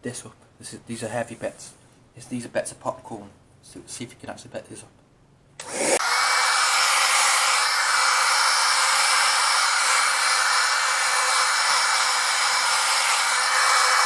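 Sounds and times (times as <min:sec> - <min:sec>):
handheld vacuum running: 0:05.6 - 0:14.0.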